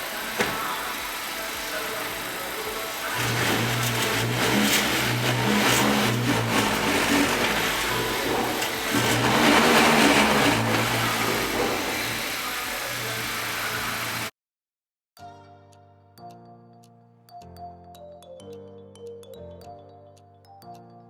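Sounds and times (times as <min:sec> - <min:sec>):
car engine revving: 0:00.0 - 0:14.3.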